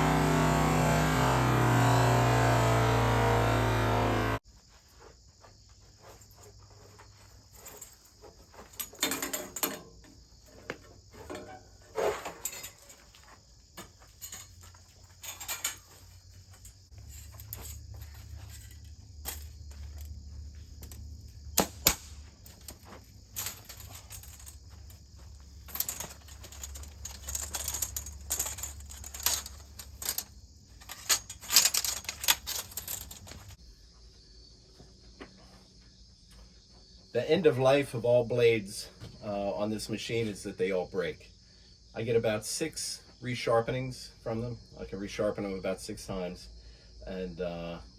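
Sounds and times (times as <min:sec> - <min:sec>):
low steady hum: 0:00.0 - 0:04.4
crickets chirring: 0:04.4 - 0:47.9.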